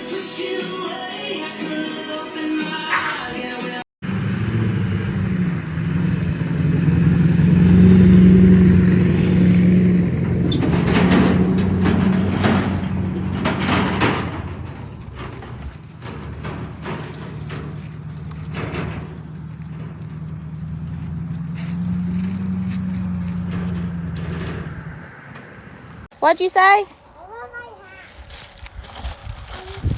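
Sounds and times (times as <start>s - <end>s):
vehicle engine running: 4.0s - 26.1s
clattering knocks: 7.7s - 26.0s.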